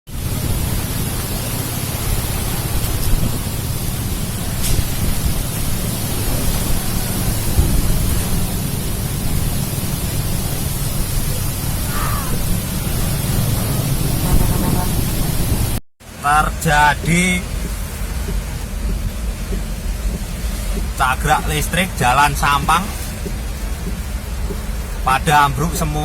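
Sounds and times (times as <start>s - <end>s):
wind buffeting microphone: 0.1s - 15.8s
heavy rain: 0.1s - 26.0s.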